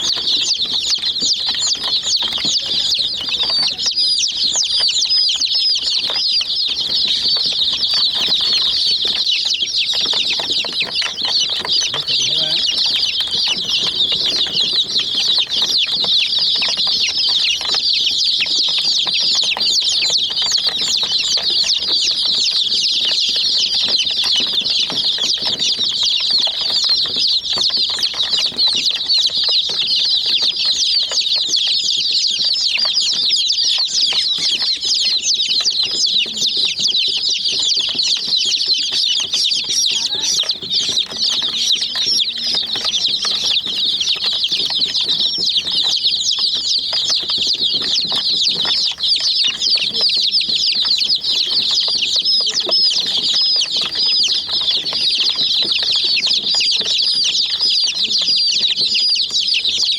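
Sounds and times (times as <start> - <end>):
chicks peeping: 0.0 - 59.9.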